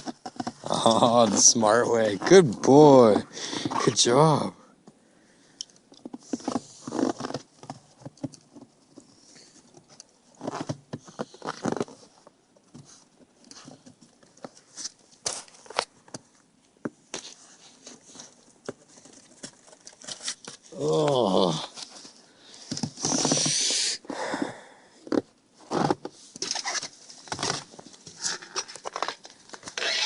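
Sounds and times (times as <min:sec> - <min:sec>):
rustling scrapes: 0:17.1 - 0:20.8, 0:21.7 - 0:23.8, 0:25.6 - 0:30.0.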